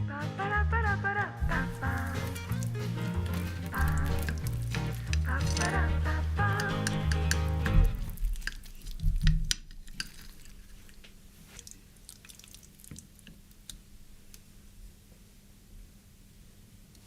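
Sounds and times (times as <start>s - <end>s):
background music: 0.0s - 8.1s
low thumps: 1.4s - 8.3s
utensils and dishes clicking: 1.5s - 11.0s.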